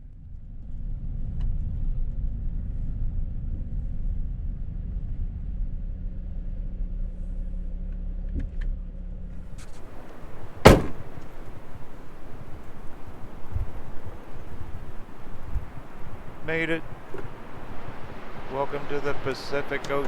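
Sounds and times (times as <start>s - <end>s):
car door slamming: 9.4s - 18.9s
vehicle engine idling: 9.4s - 20.0s.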